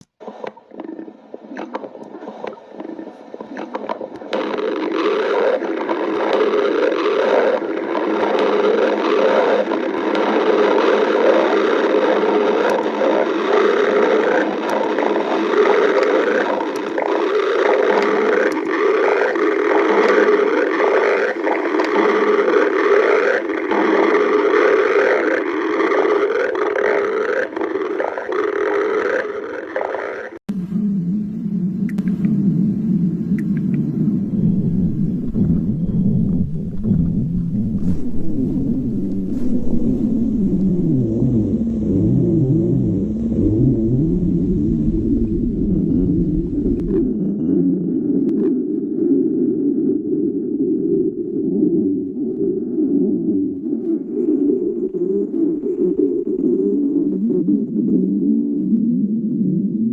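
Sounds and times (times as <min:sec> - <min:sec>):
stomach growling: 0:00.0 - 0:59.9.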